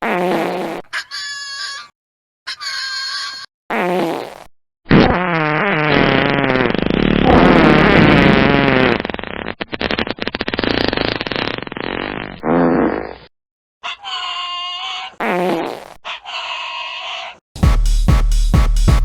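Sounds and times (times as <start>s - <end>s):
fart sound effects: 0.0s - 0.8s, 3.7s - 13.3s, 15.2s - 16.0s.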